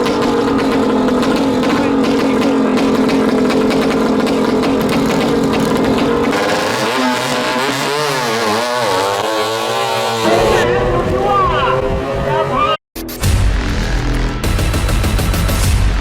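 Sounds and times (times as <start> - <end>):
speedboat engine at high revs: 0.0 - 12.8.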